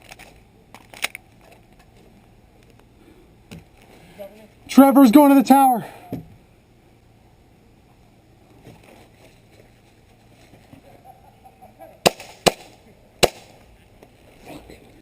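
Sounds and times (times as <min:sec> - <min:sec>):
airsoft pistol shots: 0:12.0 - 0:13.6.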